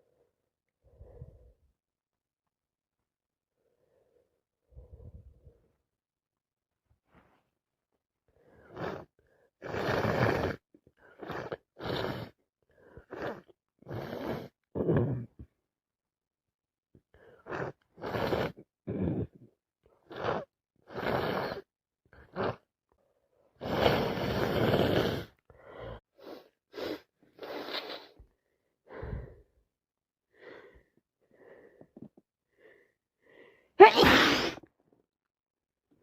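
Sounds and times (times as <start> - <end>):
noisy breath out: 23.3 - 29.6, 30.3 - 33.8
person sniffing and gasping: 23.6 - 28.2, 33.8 - 34.6
person sneezing: 33.8 - 34.6.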